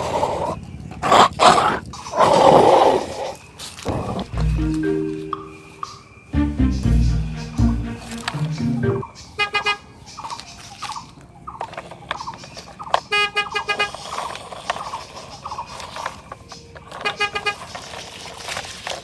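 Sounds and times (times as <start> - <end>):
electronic chirping tones: 4.3 - 9.1
toy horn honks: 13.1 - 14.0, 17.0 - 17.6.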